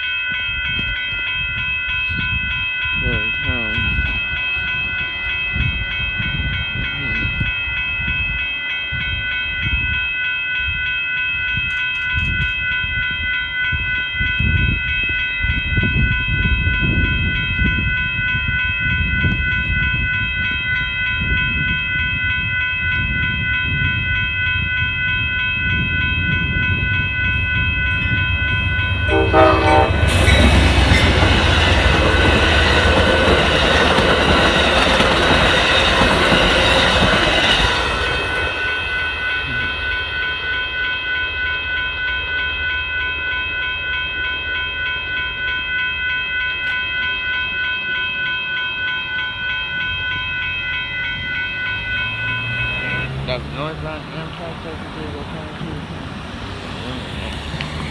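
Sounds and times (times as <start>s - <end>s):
low train rumble: 0.0s - 57.9s
passing train rush and clatter: 0.0s - 57.9s
train horn chord: 27.8s - 32.5s, 51.6s - 54.3s.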